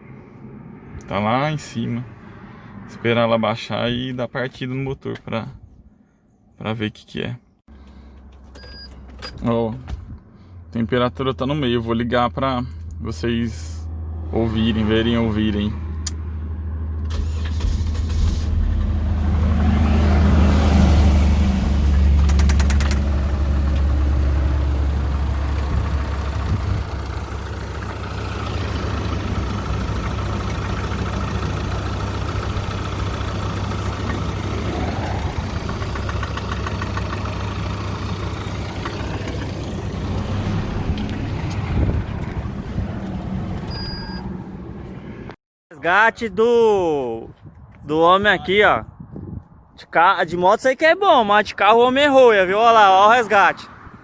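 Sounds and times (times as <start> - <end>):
car engine running abnormally: 17.0 - 45.0.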